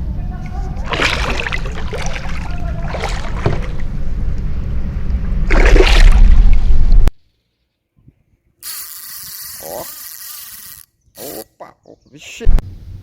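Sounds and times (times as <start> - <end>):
steady low rumble: 0.0 - 7.2
water splashing: 0.7 - 4.0, 5.4 - 7.0.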